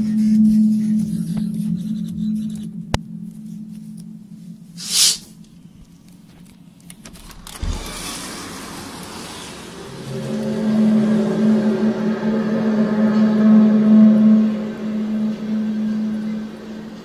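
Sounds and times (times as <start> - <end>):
low droning hum: 0.0 - 17.0
loud hiss: 4.8 - 5.3, 7.5 - 11.8
noisy rush: 7.2 - 17.0
thump: 7.4 - 8.4.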